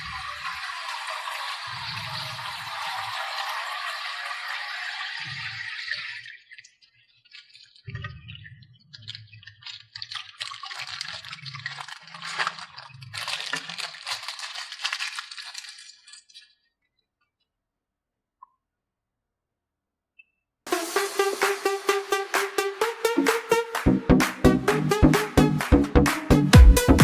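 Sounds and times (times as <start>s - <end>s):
plastic toys clattering: 8.9s - 16.8s.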